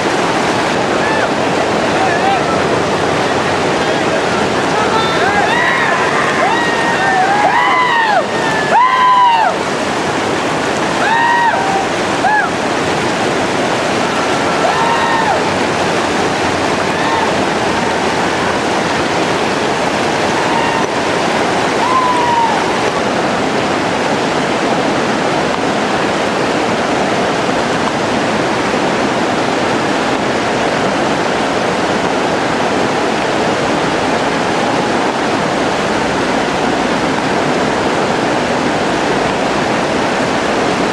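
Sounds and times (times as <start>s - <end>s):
river rapids rushing: 0.0s - 40.9s
people shouting: 4.7s - 9.6s, 11.0s - 12.6s, 14.4s - 15.6s, 16.8s - 18.4s, 20.3s - 21.1s, 21.8s - 22.8s.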